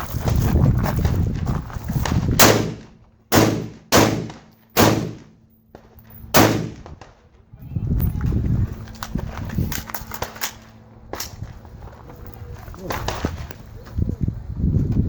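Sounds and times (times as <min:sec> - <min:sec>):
rifle shots: 0:02.4 - 0:05.4, 0:06.3 - 0:07.2.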